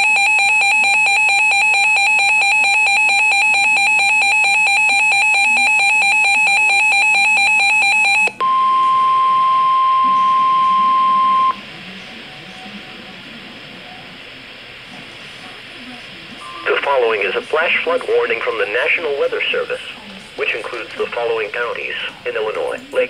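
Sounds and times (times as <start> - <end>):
two-pitch electronic alarm: 0.0 - 11.6
steady warning tone: 0.0 - 14.1.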